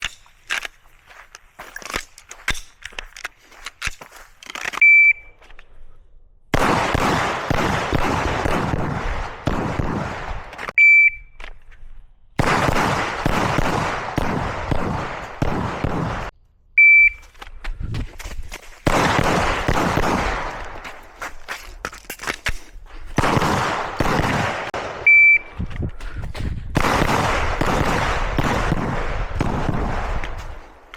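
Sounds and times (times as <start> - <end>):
shot timer beeps: 4.8 - 5.3, 10.8 - 11.4, 16.8 - 17.2, 25.0 - 25.6
pistol firing rapid shots: 6.6 - 10.5, 12.4 - 16.3, 18.9 - 20.8, 23.2 - 25.1, 26.8 - 30.4.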